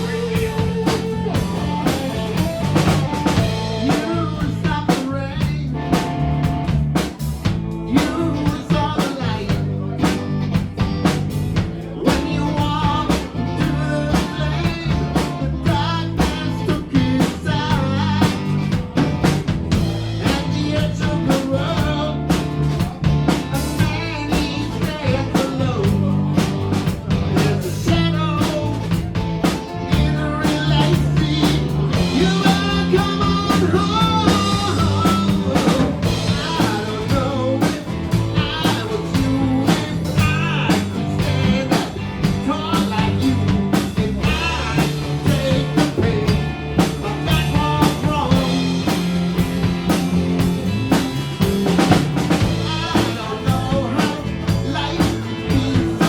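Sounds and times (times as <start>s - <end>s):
blues-rock band playing: 0.0s - 56.0s
drum-kit beat: 0.0s - 56.0s.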